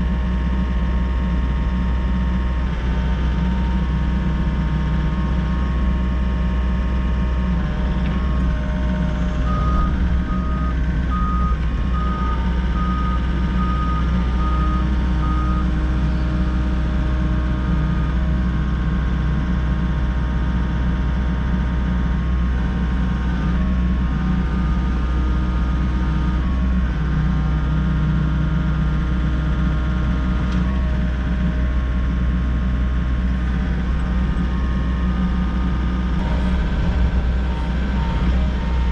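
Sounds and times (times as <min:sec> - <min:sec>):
diesel engine running: 0:00.0 - 0:38.9
travel alarm beeping: 0:09.4 - 0:15.7
hydraulics working: 0:33.1 - 0:38.9.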